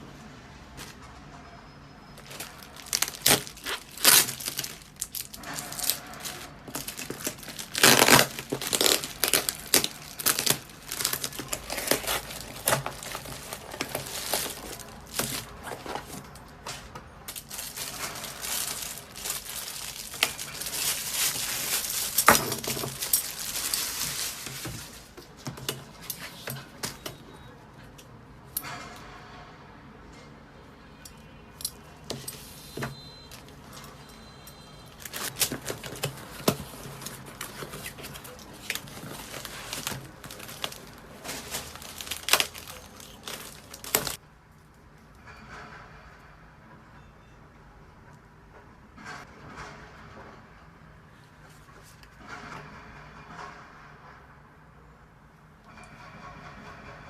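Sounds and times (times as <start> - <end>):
packaging tearing: 2.2 - 16.2, 17.3 - 25.2, 35.0 - 44.2
packaging crinkling and rustling: 2.2 - 27.2, 34.9 - 44.2.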